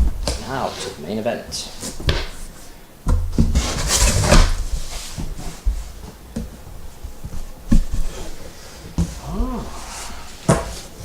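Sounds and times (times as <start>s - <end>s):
cardboard rustling and scraping: 3.3s - 11.0s.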